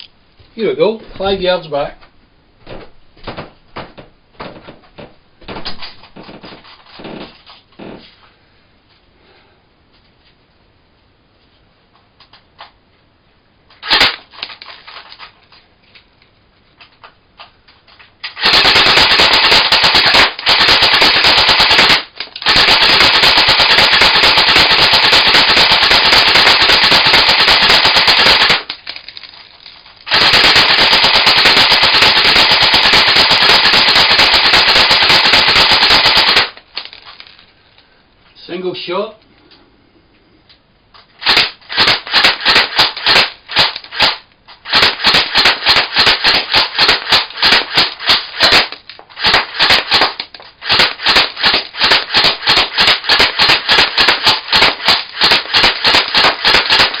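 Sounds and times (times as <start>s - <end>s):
airsoft rifle rapid fire: 13.8s - 14.5s, 18.3s - 29.2s, 30.0s - 37.0s, 41.2s - 57.0s.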